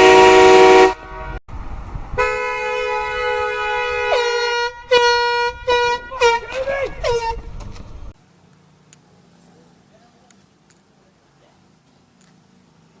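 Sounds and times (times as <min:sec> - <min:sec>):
air horn blasts: 0:00.0 - 0:01.4, 0:02.2 - 0:07.6.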